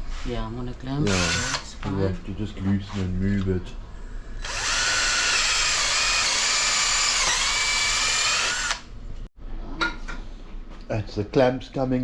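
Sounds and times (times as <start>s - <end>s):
battery drill drilling into wood: 1.1s - 1.7s, 4.4s - 8.9s.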